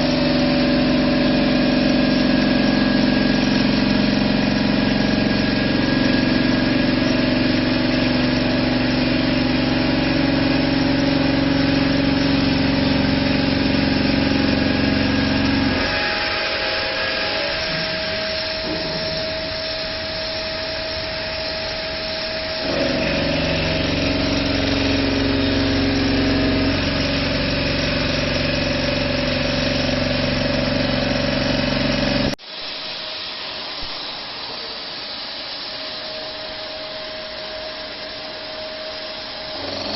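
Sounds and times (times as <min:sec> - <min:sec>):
saw cutting noise: 0:00.0 - 0:32.4, 0:36.0 - 0:39.9
machine hum: 0:00.0 - 0:39.9
steady hiss: 0:32.4 - 0:39.7.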